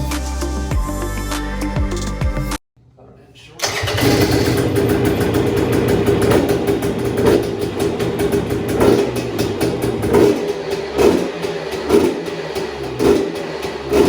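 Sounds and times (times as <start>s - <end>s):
dirt bike engine idling: 3.7s - 14.0s.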